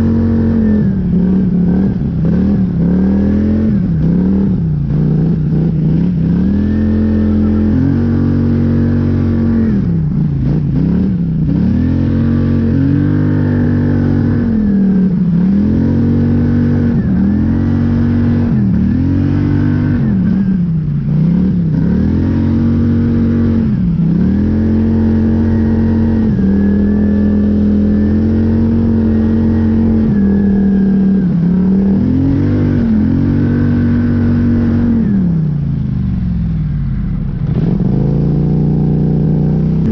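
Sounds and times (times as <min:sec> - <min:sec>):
atv engine revving under load: 0:00.0 - 0:39.9.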